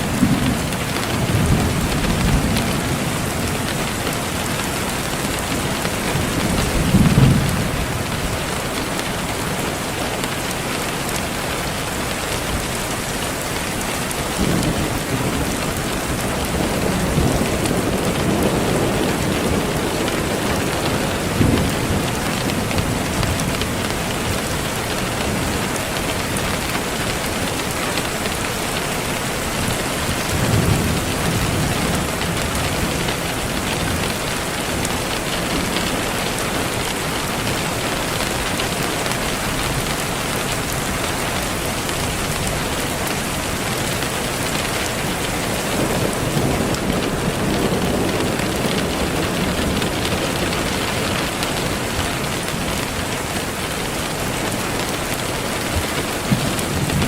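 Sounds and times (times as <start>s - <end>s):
rain hiss: 0.0s - 57.0s
distant thunder rumbling: 14.3s - 26.4s, 43.5s - 57.0s.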